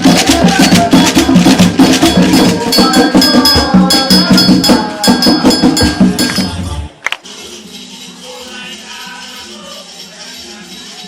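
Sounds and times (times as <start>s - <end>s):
hand drums: 0.0s - 11.0s.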